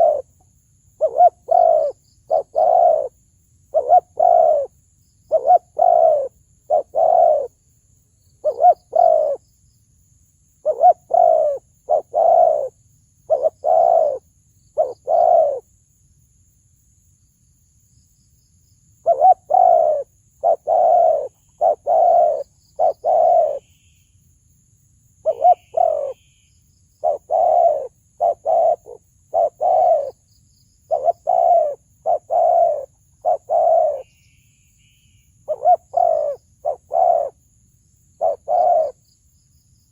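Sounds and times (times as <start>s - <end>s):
dove cooing: 0.0s - 0.4s, 1.0s - 4.7s, 5.3s - 7.6s, 8.4s - 9.4s, 10.6s - 14.2s, 14.8s - 15.6s, 19.0s - 23.7s, 25.2s - 26.2s, 27.0s - 30.2s, 30.9s - 34.1s, 35.5s - 37.4s, 38.2s - 39.0s.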